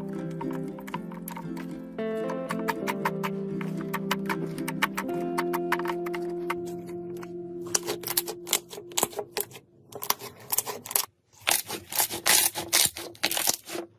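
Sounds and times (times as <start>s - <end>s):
background music with held notes: 0.0s - 9.5s.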